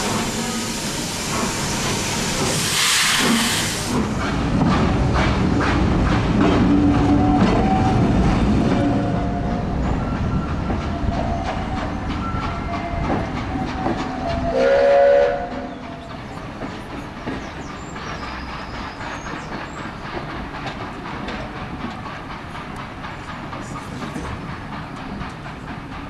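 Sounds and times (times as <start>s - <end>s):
train moving along track: 0.0s - 26.0s
train whistle: 14.2s - 15.8s.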